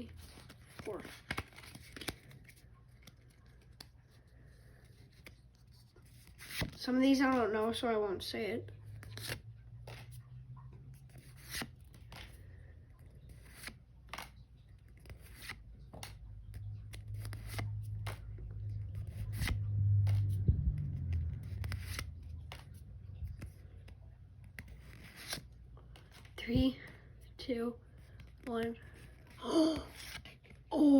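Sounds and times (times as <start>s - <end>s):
trading cards clicking and rustling: 0.1s - 7.9s, 8.8s - 27.0s, 28.1s - 30.7s
low hum: 16.3s - 24.3s.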